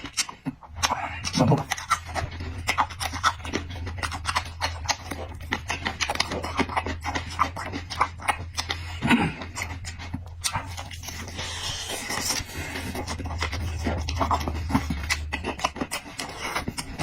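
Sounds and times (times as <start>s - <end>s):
chewing crunchy food: 0.0s - 17.0s
low hum: 0.6s - 17.0s.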